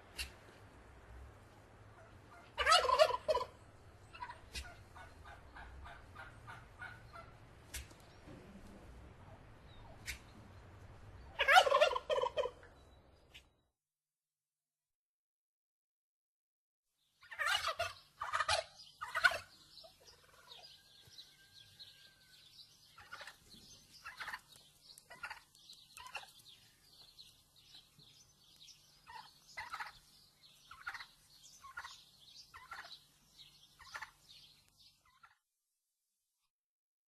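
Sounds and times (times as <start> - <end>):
turkeys gobbling: 0.1 - 0.5, 1.9 - 8.0, 9.2 - 10.6, 11.3 - 12.8, 17.2 - 27.1, 29.0 - 34.4, 35.0 - 35.4.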